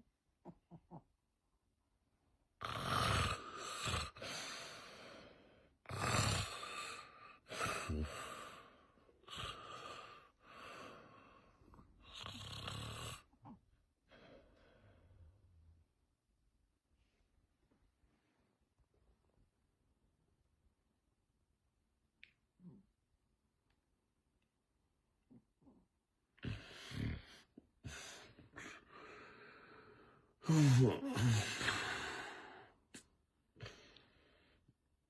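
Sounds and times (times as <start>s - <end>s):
man snoring loudly: 2.6s - 4.5s, 5.8s - 10.3s, 12.0s - 13.3s.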